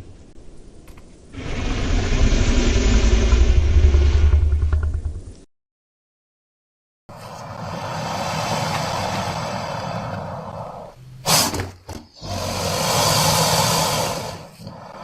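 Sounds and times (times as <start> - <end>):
creature roaring: 1.4 - 4.8, 7.3 - 11.0, 12.2 - 15.0.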